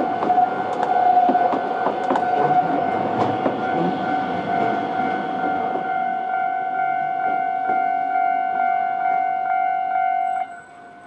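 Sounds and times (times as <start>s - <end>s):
tram wheels clattering over rails: 0.0s - 8.2s
level-crossing alarm ringing: 0.0s - 11.0s.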